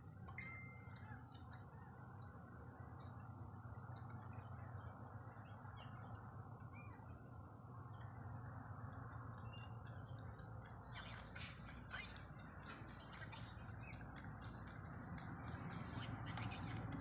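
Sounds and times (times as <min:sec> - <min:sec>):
rabbits chewing food: 0:07.9 - 0:17.0.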